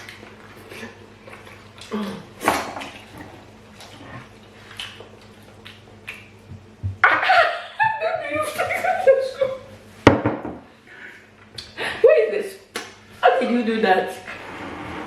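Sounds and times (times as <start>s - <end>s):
slurping: 0.0s - 6.3s
wet eating sounds: 0.0s - 7.3s.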